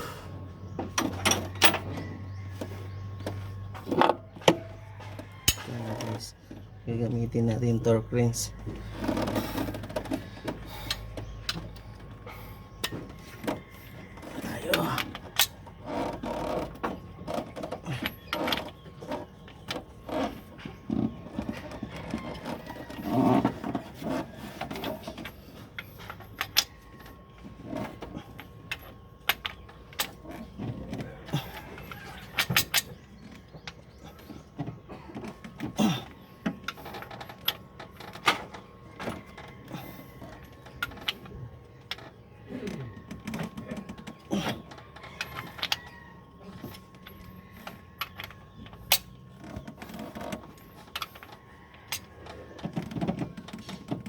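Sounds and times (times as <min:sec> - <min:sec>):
hand tools clicking on metal: 0:05.5 - 0:06.3.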